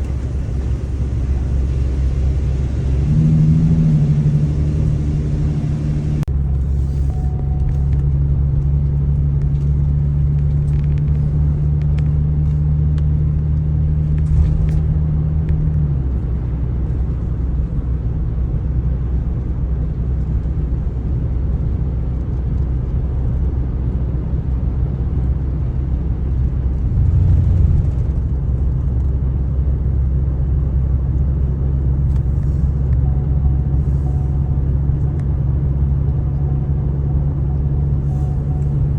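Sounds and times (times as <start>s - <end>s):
car engine and road noise: 0.0s - 38.9s.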